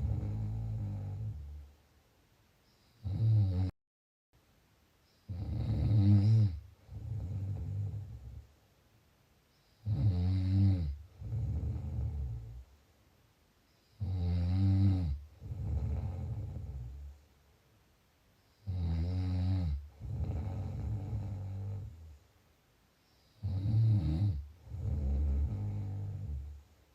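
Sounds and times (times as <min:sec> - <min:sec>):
person snoring: 0:00.0 - 0:01.6, 0:03.0 - 0:03.7, 0:05.3 - 0:08.4, 0:09.8 - 0:12.6, 0:14.0 - 0:17.1, 0:18.6 - 0:22.1, 0:23.4 - 0:26.6.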